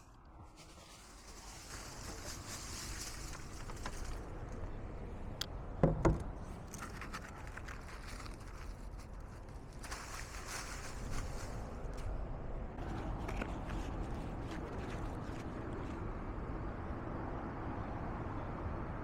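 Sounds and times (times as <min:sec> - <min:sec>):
dry leaves rustling: 0:00.0 - 0:05.2, 0:06.4 - 0:14.9.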